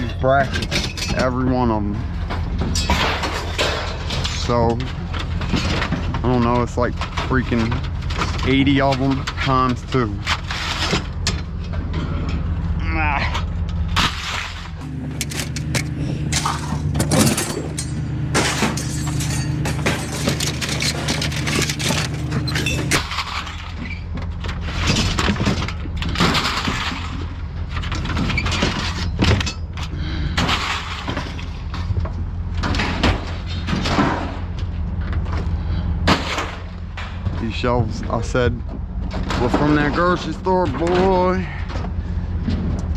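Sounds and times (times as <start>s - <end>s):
metal shelving crashing and clanging: 0.0s - 12.6s, 13.2s - 35.0s, 35.8s - 38.5s, 39.1s - 42.8s
low engine hum: 0.0s - 42.9s.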